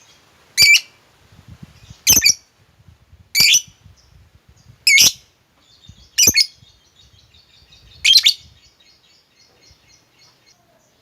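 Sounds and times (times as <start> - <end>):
bird shrill calls: 0.0 - 1.0, 1.8 - 2.4, 4.9 - 10.4.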